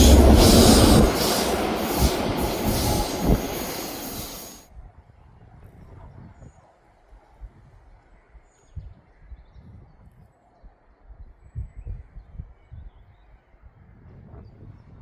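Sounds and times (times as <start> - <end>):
wind buffeting microphone: 0.0 - 4.6.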